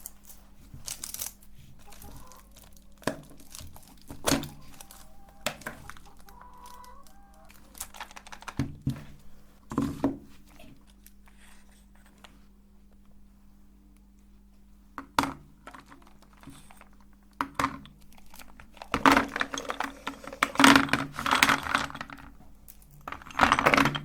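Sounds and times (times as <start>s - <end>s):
chalk cracking and crunching in grinder: 0.0s - 8.6s.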